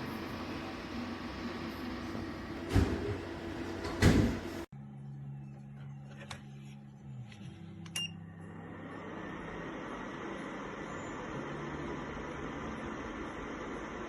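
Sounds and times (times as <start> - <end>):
fan blowing rush: 0.0 - 4.7
heater low hum: 0.0 - 4.7, 5.3 - 14.0.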